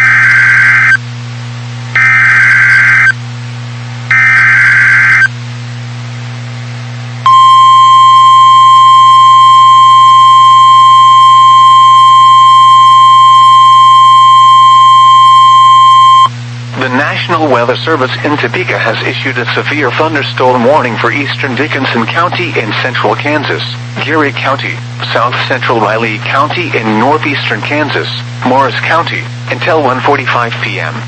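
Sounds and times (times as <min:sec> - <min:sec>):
buzzing data bursts: 0:00.0 - 0:01.0, 0:02.0 - 0:03.2, 0:04.1 - 0:05.3
steady warning alarm tone: 0:00.0 - 0:01.0, 0:02.0 - 0:03.2, 0:04.1 - 0:05.3, 0:07.3 - 0:16.3.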